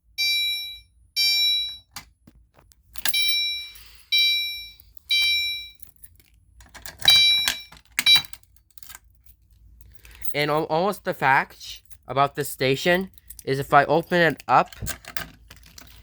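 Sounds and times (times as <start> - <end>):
fire alarm horn beeping: 0.1 - 1.9, 3.1 - 5.8, 7.0 - 8.3.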